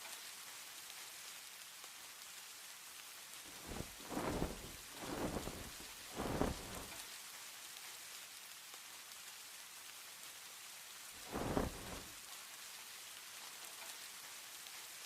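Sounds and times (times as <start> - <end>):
steady rain: 0.0 - 15.0
thunder rumbling: 3.5 - 7.0.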